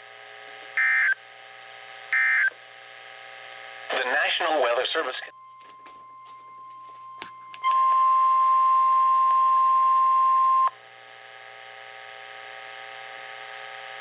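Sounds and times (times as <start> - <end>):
radio static: 0.0 - 5.3
high alarm beep: 0.8 - 1.2, 2.2 - 2.5, 5.4 - 10.9.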